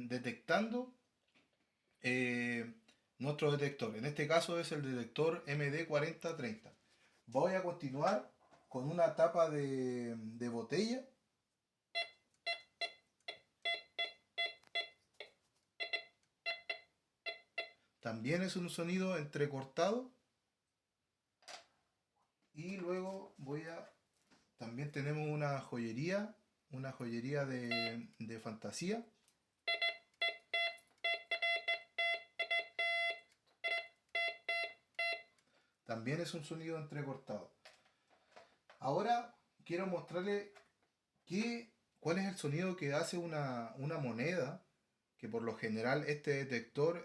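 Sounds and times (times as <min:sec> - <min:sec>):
metal detector beeping: 0:12.0 - 0:15.0, 0:15.8 - 0:17.8, 0:27.7 - 0:28.0, 0:29.7 - 0:35.3.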